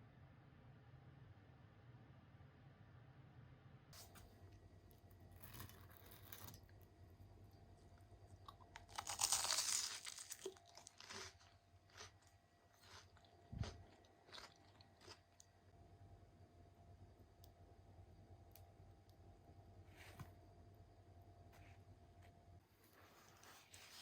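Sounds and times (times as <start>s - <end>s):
faint chewing: 8.3s - 15.6s
crunchy bite into pie: 8.4s - 15.5s.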